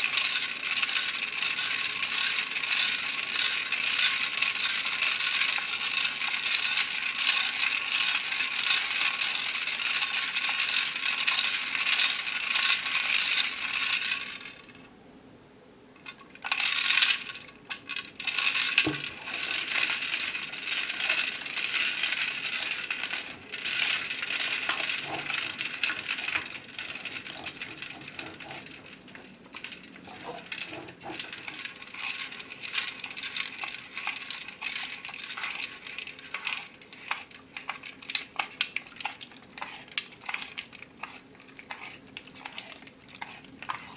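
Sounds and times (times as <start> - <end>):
plastic beads rattling: 16.4 - 40.8.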